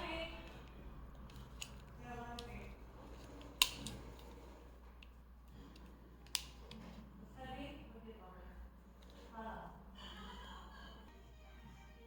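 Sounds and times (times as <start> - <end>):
crimping tool metal clicks: 3.4 - 4.0, 6.2 - 6.5.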